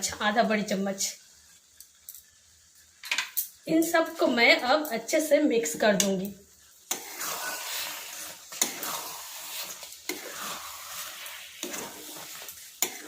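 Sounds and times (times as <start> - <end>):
chutney sizzling in a pan: 0.0 - 13.0.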